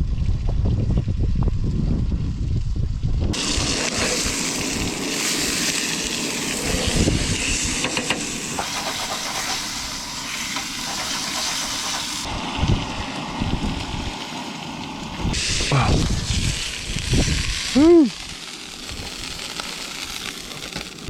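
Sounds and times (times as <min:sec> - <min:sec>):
wind rumbling on microphone: 0:00.0 - 0:05.4, 0:06.5 - 0:09.1, 0:11.4 - 0:14.2, 0:15.0 - 0:19.4
camp stove hissing: 0:03.3 - 0:21.0
faint crackles: 0:13.7 - 0:21.0.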